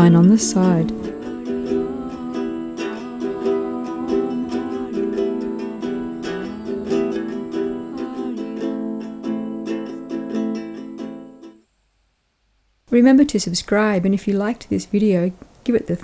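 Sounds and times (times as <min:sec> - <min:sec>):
plucked background music: 0:00.0 - 0:11.5.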